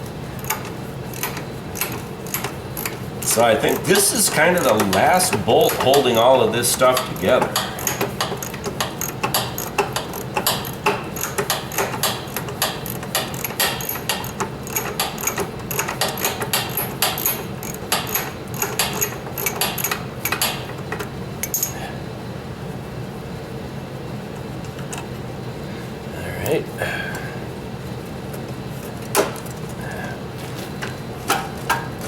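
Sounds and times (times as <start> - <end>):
hand ratchet clicking: 0.4 - 21.7.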